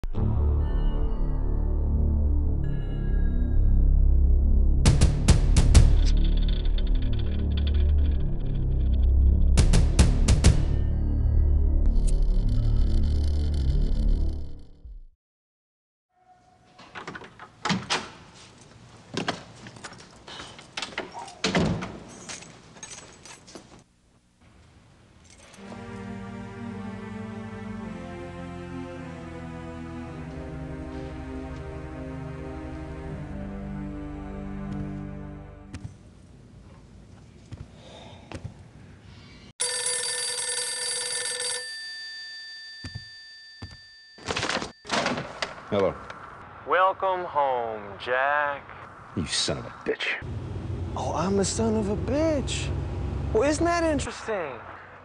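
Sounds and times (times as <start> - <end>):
telephone bell ringing: 39.6 - 44.9.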